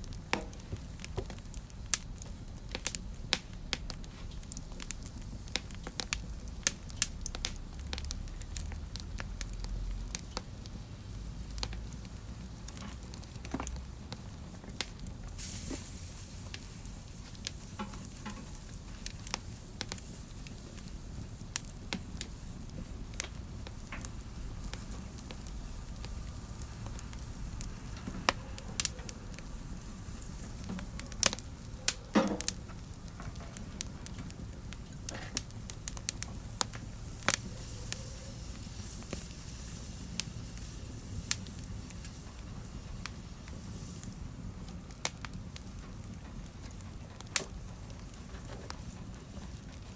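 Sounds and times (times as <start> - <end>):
fire crackling and popping: 0.0 - 49.9
short hiss: 15.4 - 17.8.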